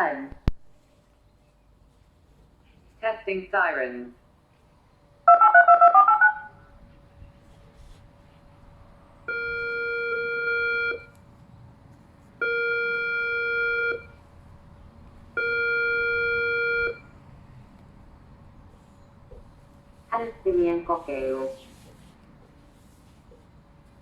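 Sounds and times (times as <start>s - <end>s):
siren test beeps: 5.3s - 6.7s, 9.3s - 11.1s, 12.4s - 14.2s, 15.4s - 17.1s.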